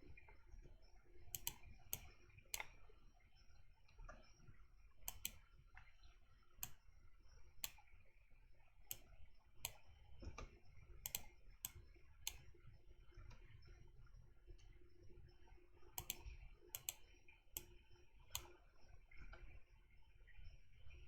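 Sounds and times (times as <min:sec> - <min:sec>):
mouse and keyboard clicks: 0:01.3 - 0:02.7, 0:05.1 - 0:05.4, 0:07.6 - 0:07.8, 0:08.9 - 0:09.8, 0:11.1 - 0:12.5, 0:16.0 - 0:17.0, 0:18.3 - 0:18.5.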